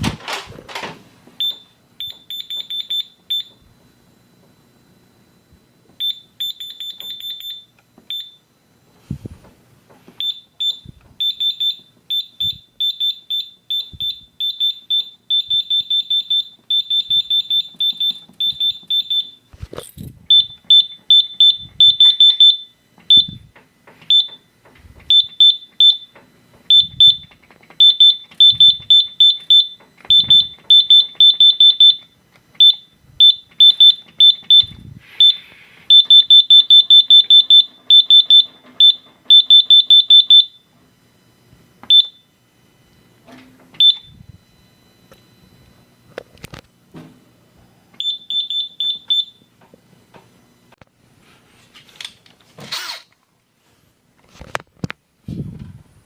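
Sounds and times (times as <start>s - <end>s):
fire alarm beeping: 1.4s - 3.7s, 6.0s - 8.5s, 10.2s - 19.6s, 20.3s - 23.5s, 24.1s - 24.5s, 25.1s - 40.8s, 41.8s - 42.4s, 43.2s - 46.6s, 48.0s - 50.7s.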